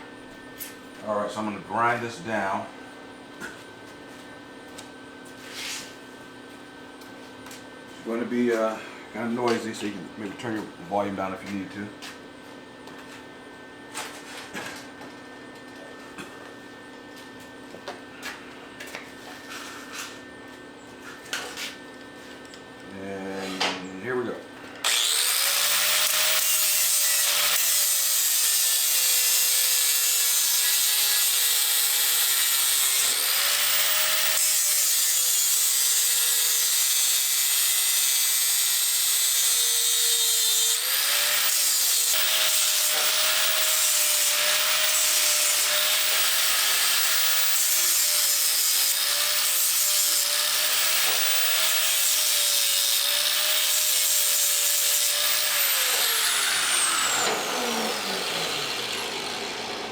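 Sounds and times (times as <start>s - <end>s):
angle grinder grinding steel: 24.8s - 59.9s.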